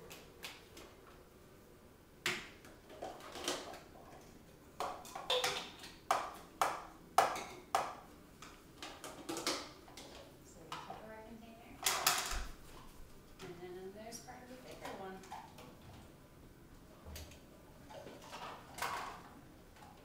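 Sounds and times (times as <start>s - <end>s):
dishes clinking and knocking: 4.8s - 8.0s.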